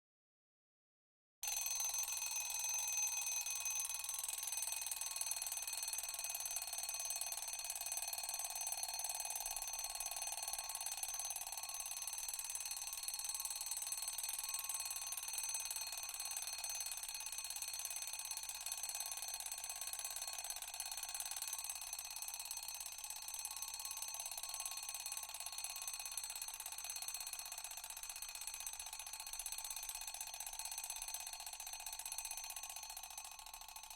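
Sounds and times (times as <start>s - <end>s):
alarm clock bell ringing: 1.4s - 7.5s.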